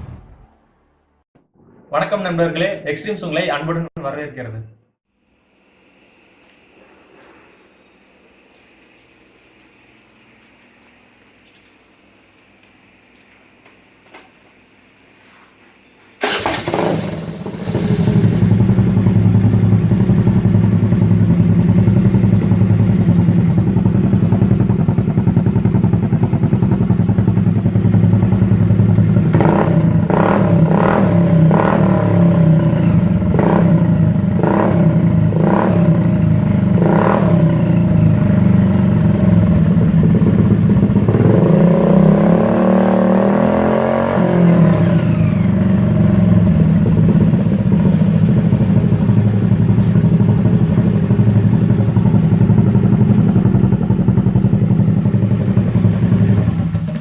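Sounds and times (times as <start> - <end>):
scooter engine running: 16.2 - 57.0
exhaust pops: 23.7 - 31.1.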